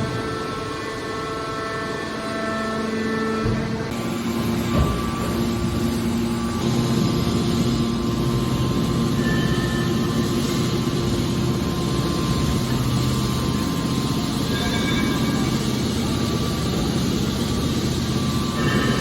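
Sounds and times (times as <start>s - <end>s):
industrial machinery humming: 0.0s - 19.0s.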